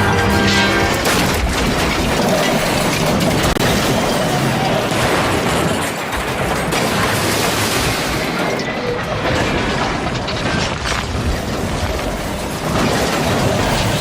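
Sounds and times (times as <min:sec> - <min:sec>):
crashing and rumbling: 0:00.0 - 0:14.0.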